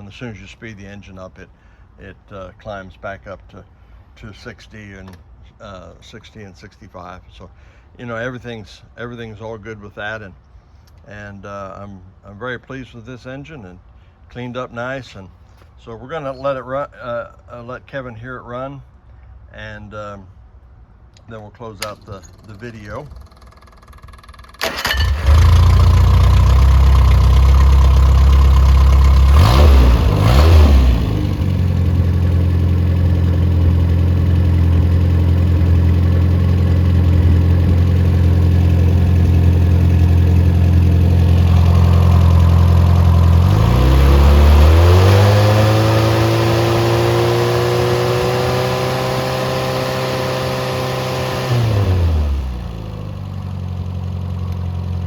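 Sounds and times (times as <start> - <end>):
car engine running loudly: 25.1 - 55.0.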